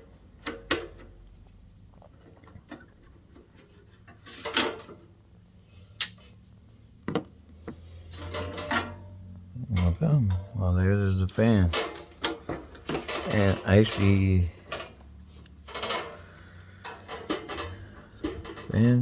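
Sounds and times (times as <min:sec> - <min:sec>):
heater parts clicking and knocking: 0:00.0 - 0:01.3, 0:07.0 - 0:19.0
low steady hum: 0:00.0 - 0:19.0.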